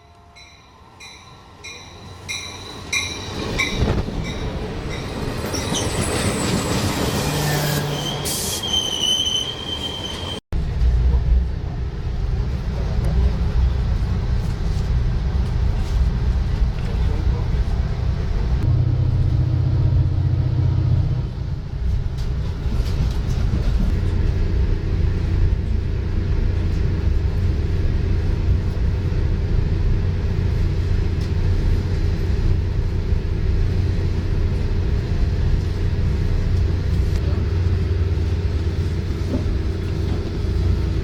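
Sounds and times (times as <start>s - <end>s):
road vehicle rumble: 10.3s - 41.0s.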